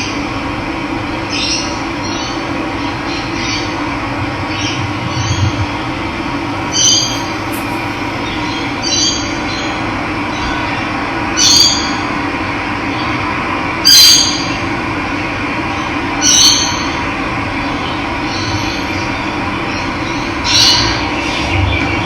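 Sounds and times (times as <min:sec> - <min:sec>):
bird short high call: 0:06.6 - 0:09.1.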